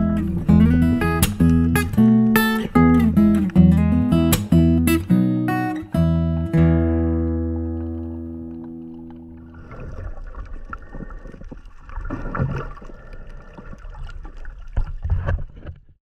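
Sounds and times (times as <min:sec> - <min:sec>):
water splashing and sloshing: 0:07.6 - 0:16.0.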